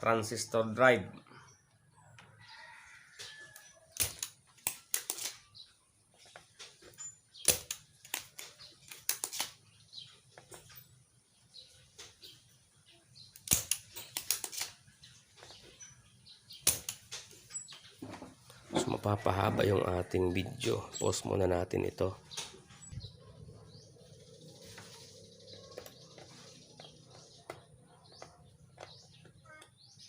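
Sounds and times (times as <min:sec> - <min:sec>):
hand tools clicking on circuit board: 0:04.0 - 0:05.4, 0:07.4 - 0:09.6, 0:13.4 - 0:14.7.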